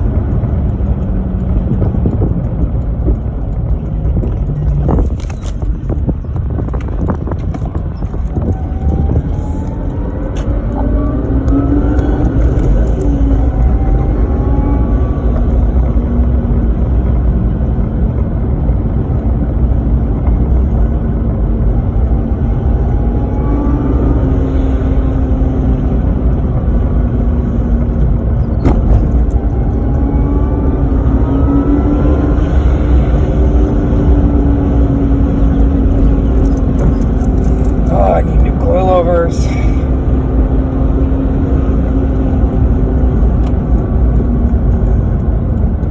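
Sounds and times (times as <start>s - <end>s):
deep engine rumble: 0.0s - 45.9s
supercharger whine rising in pitch: 6.0s - 45.9s.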